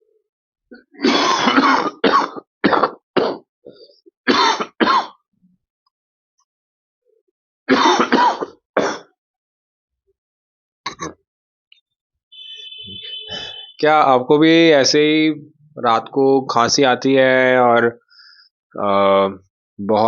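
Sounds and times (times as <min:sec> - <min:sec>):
person coughing harshly: 0:01.0 - 0:03.5, 0:04.3 - 0:05.2, 0:07.7 - 0:09.1, 0:10.9 - 0:11.2, 0:13.0 - 0:13.7.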